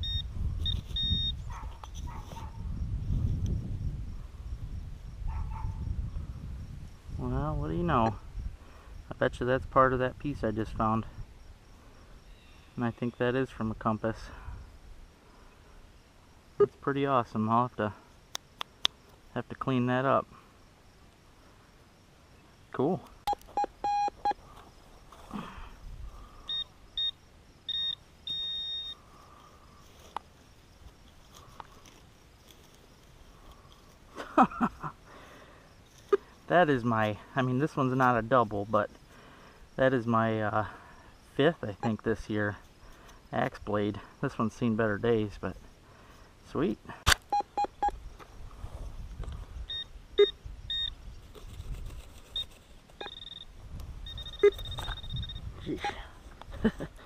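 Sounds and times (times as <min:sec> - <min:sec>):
metal detector beeping: 0:00.0 - 0:01.5, 0:23.3 - 0:24.4, 0:26.4 - 0:29.0, 0:41.8 - 0:42.0, 0:47.1 - 0:48.0, 0:49.7 - 0:51.0, 0:52.3 - 0:56.0.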